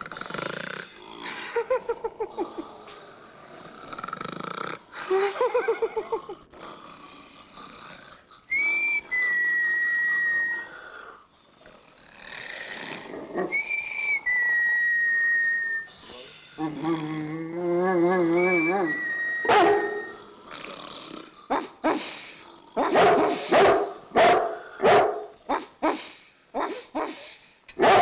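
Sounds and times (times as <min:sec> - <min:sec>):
comedy snoring with whistle: 0:00.0 - 0:01.6, 0:02.3 - 0:05.1, 0:06.6 - 0:23.5.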